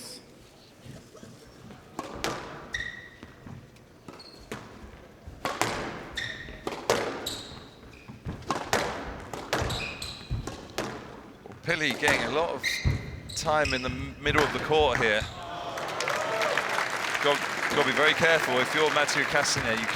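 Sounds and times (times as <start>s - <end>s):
shoes squeaking on court: 0.1s - 15.5s
squash ball cracking off rackets: 5.4s - 13.0s.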